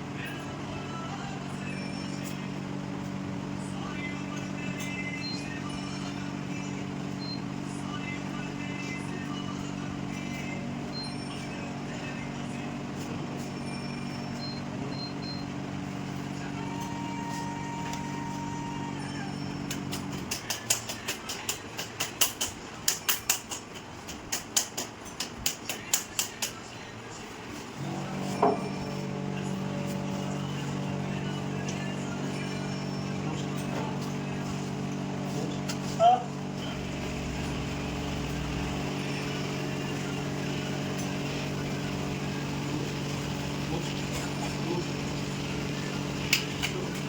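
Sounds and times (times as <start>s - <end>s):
motor humming: 27.8s - 47.0s.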